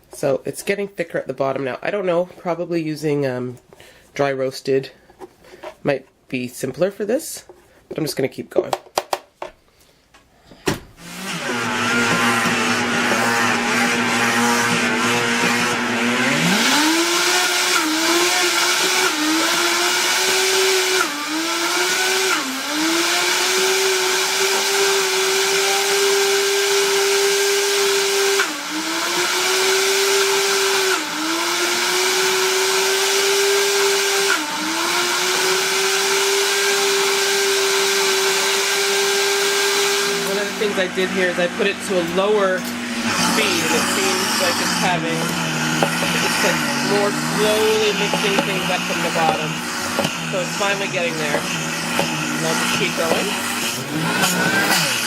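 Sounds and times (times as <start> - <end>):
blender grinding seeds: 11.0 - 55.0.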